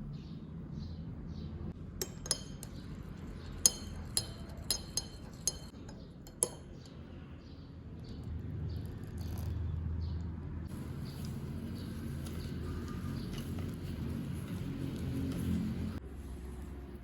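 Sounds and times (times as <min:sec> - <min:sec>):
kitchenware clinking: 0:02.0 - 0:07.0.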